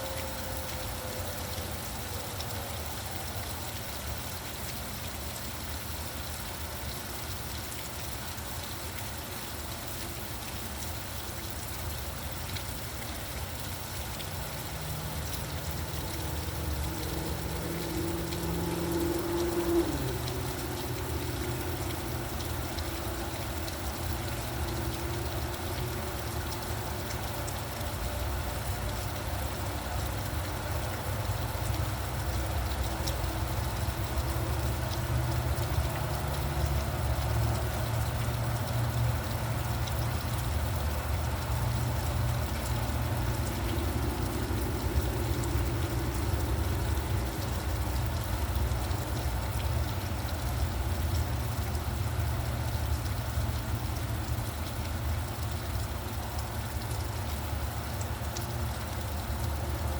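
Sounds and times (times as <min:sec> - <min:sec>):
steady rain hissing: 0:00.0 - 0:59.9
road traffic passing: 0:14.3 - 0:29.0, 0:29.6 - 0:50.2
passing vehicle hum: 0:14.8 - 0:27.5.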